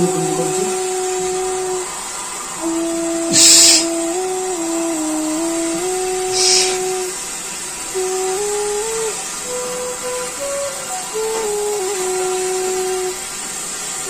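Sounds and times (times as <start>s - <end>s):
whistling tone changing pitch: 0.0s - 14.0s
short breath hisses: 3.2s - 4.0s, 6.3s - 6.9s.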